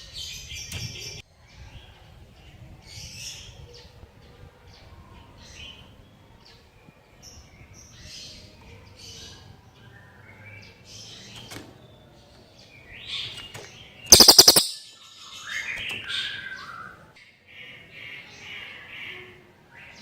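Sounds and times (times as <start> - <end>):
rapid sharp clicks: 14.1 - 14.8
songbird chirping and whistling: 14.1 - 14.9.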